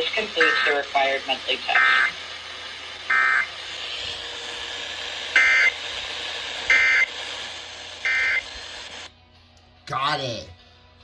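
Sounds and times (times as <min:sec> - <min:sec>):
steady radio hiss: 0:00.0 - 0:02.2
raspy digital data bursts: 0:00.0 - 0:02.3, 0:03.0 - 0:03.6, 0:05.4 - 0:05.8, 0:06.7 - 0:07.2, 0:08.0 - 0:09.0.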